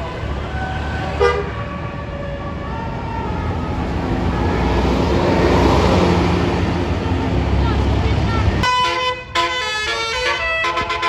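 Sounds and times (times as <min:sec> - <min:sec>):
bus engine and tyre noise: 0:00.0 - 0:11.0.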